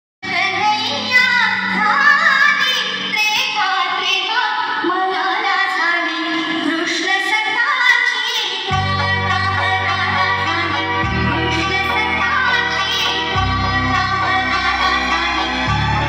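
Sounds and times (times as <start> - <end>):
high voice singing: 0.3 - 16.0
instrumental backing: 8.7 - 16.0.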